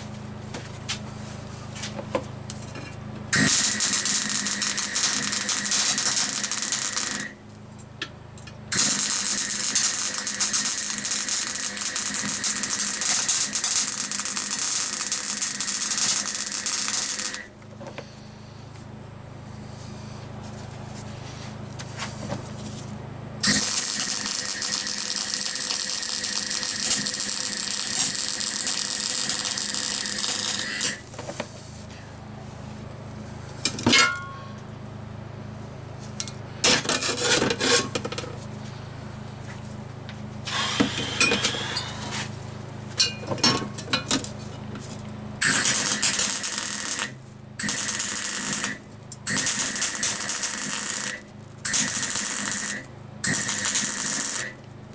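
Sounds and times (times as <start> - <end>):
metalworking tool hissing: 40.5 - 42.1.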